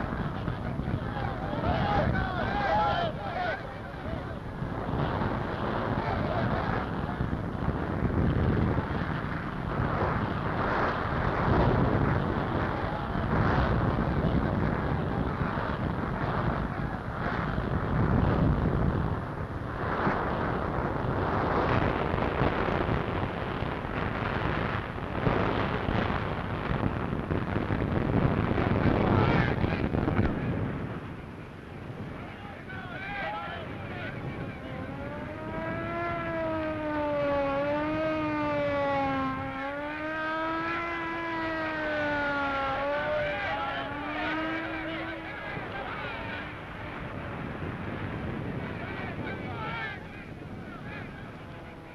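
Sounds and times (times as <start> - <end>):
rumbling roar of fire and explosions: 0.0 - 51.9
siren wailing: 33.4 - 46.6.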